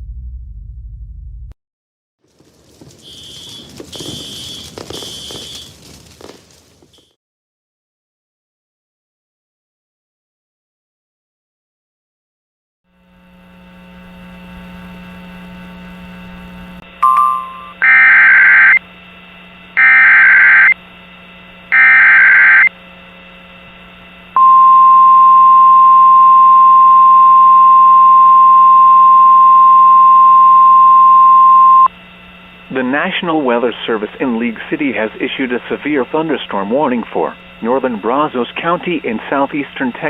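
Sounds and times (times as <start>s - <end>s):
faint hiss and hum: 13.0s - 17.0s, 31.9s - 40.0s
steady alert tone: 17.0s - 18.8s
data header screech bursts: 17.7s - 18.8s, 19.8s - 20.8s, 21.7s - 22.7s.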